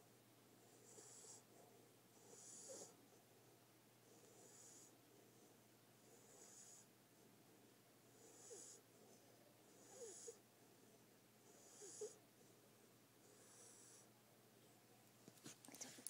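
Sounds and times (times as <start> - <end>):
puppy snoring softly: 0.6 - 3.0, 4.0 - 7.0, 8.1 - 10.5, 11.4 - 12.2, 13.2 - 14.1.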